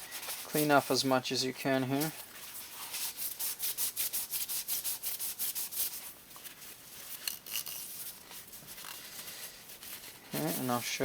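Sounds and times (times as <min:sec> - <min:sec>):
rag rubbing quickly: 0:01.9 - 0:06.0.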